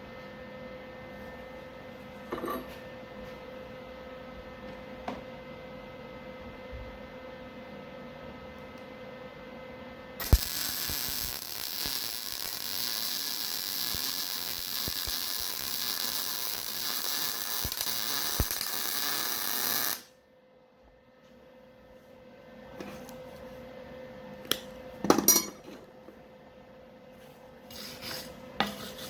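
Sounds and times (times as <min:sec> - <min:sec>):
welding arc crackling: 0:10.2 - 0:20.1.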